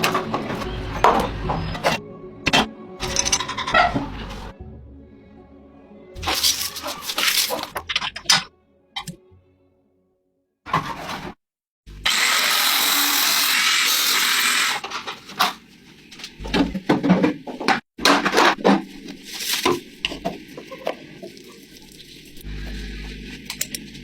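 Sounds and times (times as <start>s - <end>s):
metal parts knocking and clattering: 3.0s - 4.0s, 6.2s - 8.5s
loud rushing tool noise: 12.0s - 14.8s.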